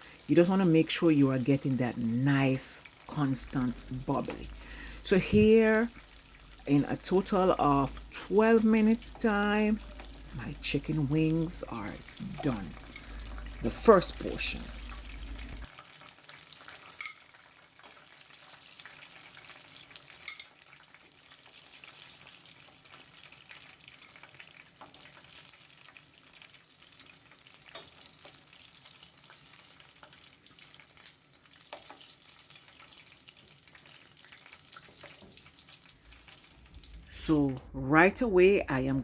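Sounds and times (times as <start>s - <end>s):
chicken wings deep-frying in oil: 0.0s - 37.4s.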